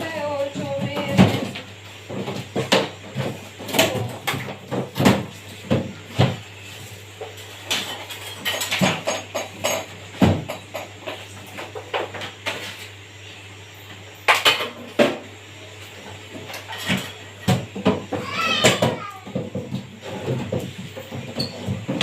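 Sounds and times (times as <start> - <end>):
hard parts and tools clattering: 7.7 - 11.2.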